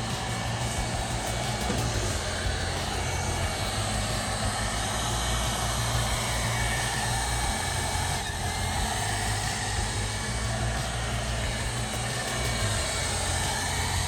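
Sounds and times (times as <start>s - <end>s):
robot vacuum whirring hum: 0.0s - 14.0s.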